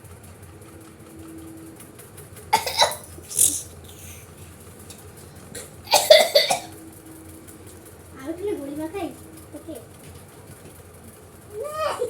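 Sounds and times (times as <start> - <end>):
person coughing: 2.6 - 3.7, 5.6 - 6.7.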